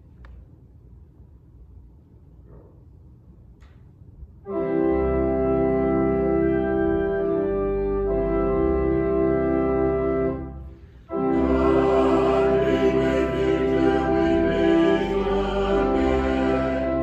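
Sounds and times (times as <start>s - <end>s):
church organ chords: 4.4s - 17.0s.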